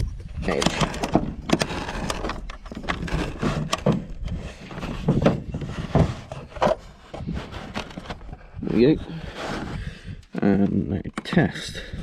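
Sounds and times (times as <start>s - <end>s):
creaks and knocks: 0.2s - 8.5s.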